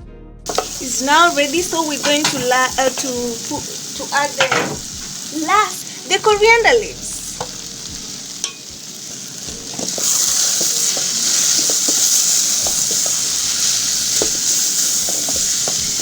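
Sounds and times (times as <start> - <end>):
spoon tapping and scraping pan: 0.5 - 5.2, 7.4 - 8.8, 9.5 - 16.0
fish sizzling in a frying pan: 0.5 - 16.0.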